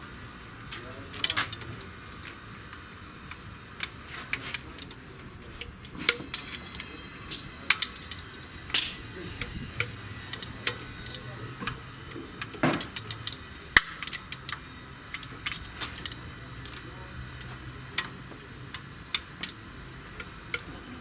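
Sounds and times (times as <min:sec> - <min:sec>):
metallic clicks of hand tools: 0:12.4 - 0:16.8.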